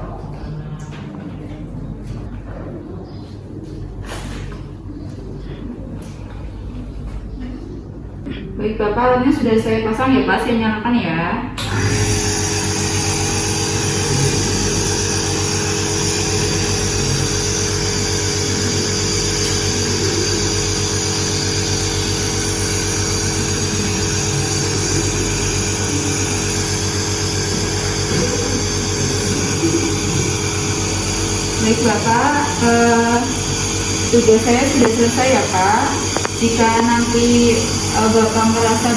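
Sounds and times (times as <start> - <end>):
nebulizer motor hum with hiss: 11.6 - 38.9.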